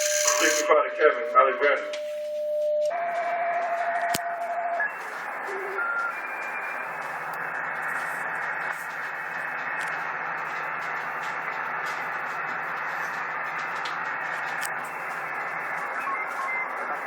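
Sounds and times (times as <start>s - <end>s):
brief radio whistles: 0.0s - 0.7s
radio static hiss: 0.0s - 1.7s
steady radio whistle: 0.0s - 7.0s.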